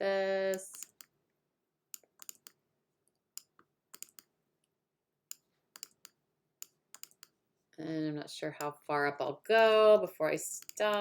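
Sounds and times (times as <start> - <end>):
computer mouse clicking: 0.5 - 1.1, 2.0 - 2.6, 3.4 - 4.3, 5.3 - 7.4, 10.6 - 11.0.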